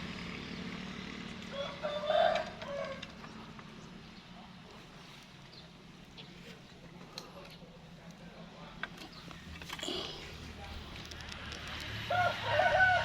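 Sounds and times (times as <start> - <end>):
rooster crowing: 1.5 - 3.1, 12.1 - 13.0.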